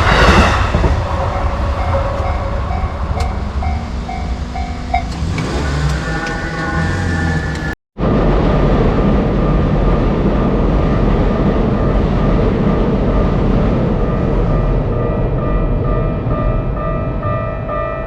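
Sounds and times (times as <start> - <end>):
crossing warning bell ringing: 0.0 - 18.0
train wheels rumbling on rail: 0.0 - 18.0.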